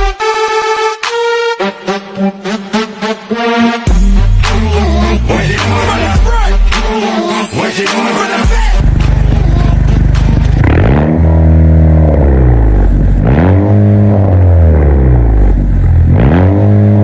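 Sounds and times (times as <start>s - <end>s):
car engine idling and revving: 3.9s - 6.4s, 8.5s - 17.0s.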